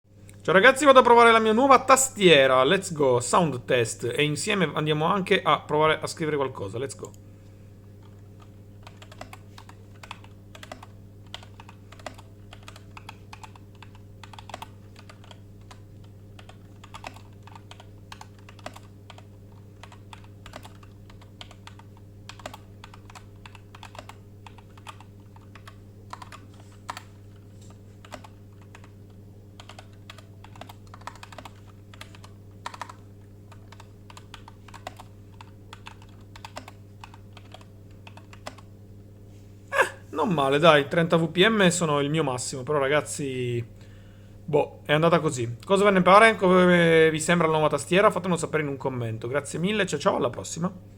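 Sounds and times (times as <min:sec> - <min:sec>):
low steady hum: 0:00.1 - 0:50.9
keyboard typing clicks: 0:08.0 - 0:29.0, 0:29.6 - 0:38.7.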